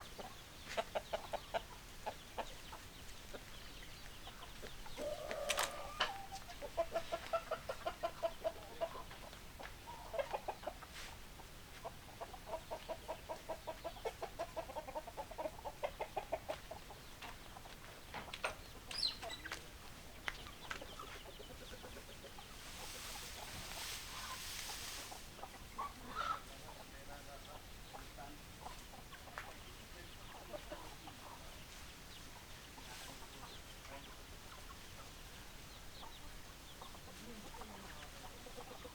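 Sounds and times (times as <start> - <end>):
hens clucking: 0.0 - 38.9.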